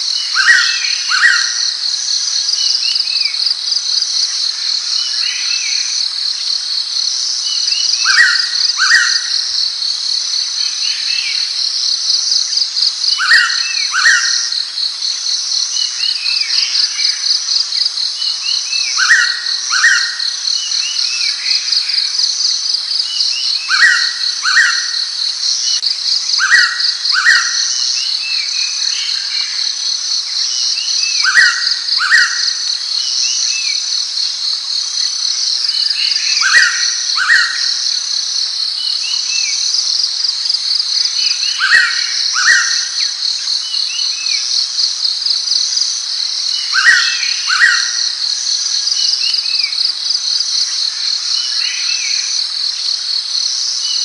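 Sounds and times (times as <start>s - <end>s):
small bird chirps: 30.4s - 33.9s, 41.0s - 44.6s.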